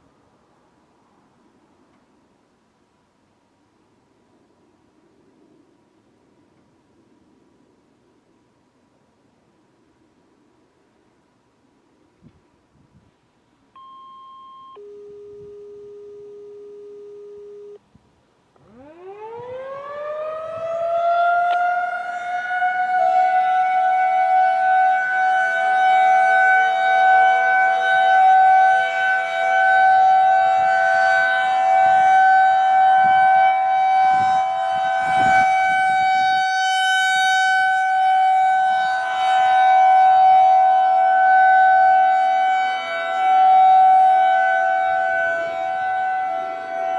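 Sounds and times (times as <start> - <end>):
short high beep: 13.8 - 17.8.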